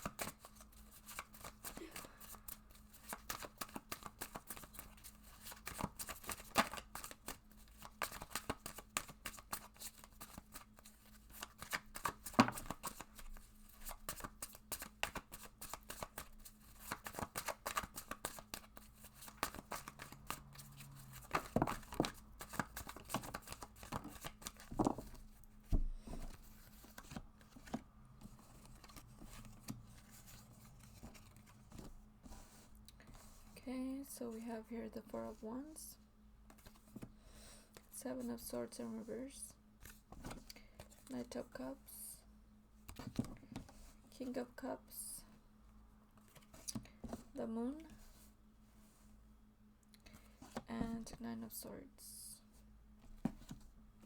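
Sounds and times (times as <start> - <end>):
cards being shuffled: 0.0 - 33.6, 36.5 - 37.1, 39.8 - 41.2.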